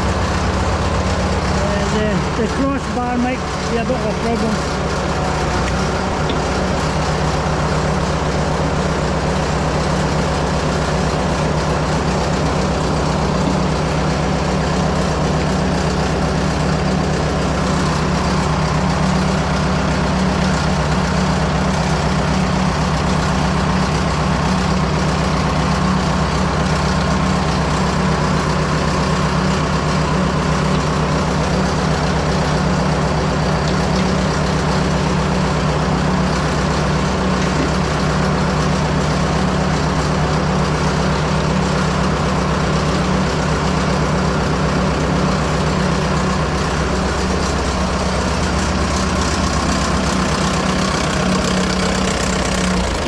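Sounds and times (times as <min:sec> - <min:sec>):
tractor engine idling: 0:00.0 - 0:53.0.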